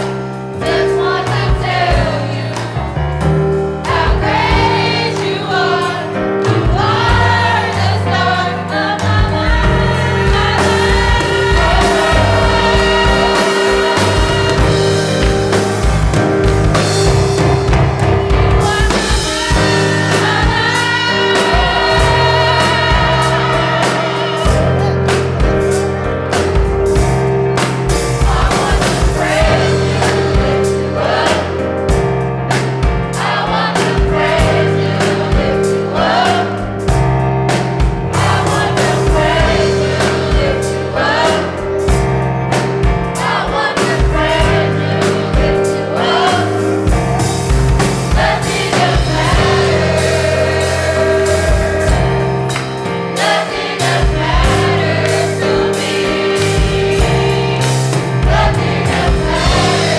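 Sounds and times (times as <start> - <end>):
gospel choir singing: 0.0 - 59.9
live band playing: 0.0 - 59.9.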